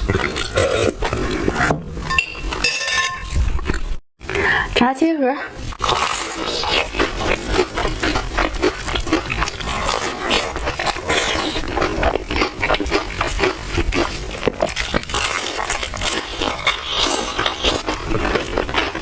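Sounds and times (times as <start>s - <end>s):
person chewing and lip-smacking: 0.0s - 1.6s, 5.6s - 19.0s.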